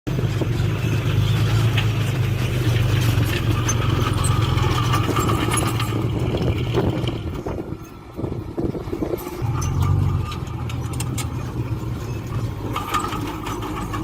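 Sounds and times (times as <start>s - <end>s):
diesel engine droning: 0.1s - 14.0s
clicks and rattles: 1.6s - 7.6s, 9.2s - 14.0s.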